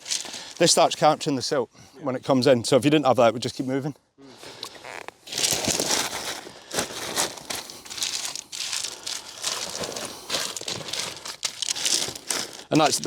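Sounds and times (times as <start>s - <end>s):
bag fabric rustling: 0.0s - 0.8s, 4.8s - 13.0s
gravel crunching: 0.0s - 1.1s, 4.7s - 13.0s.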